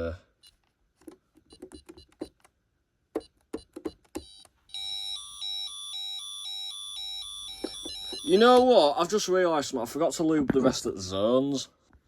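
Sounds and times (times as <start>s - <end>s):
keypad button presses: 1.0s - 2.5s, 3.1s - 4.6s
electronic warbling alarm: 4.3s - 8.7s.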